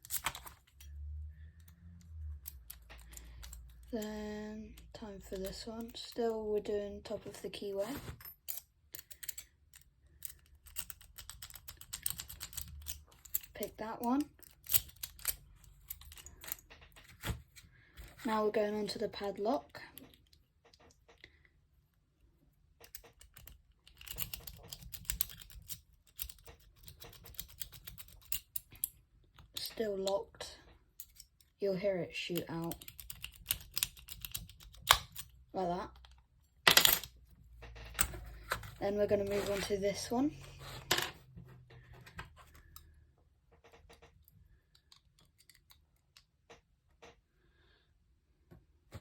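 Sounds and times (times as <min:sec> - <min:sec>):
lock pick clicking in padlock: 0:08.4 - 0:13.6, 0:14.3 - 0:16.6, 0:22.8 - 0:28.9, 0:32.6 - 0:35.4.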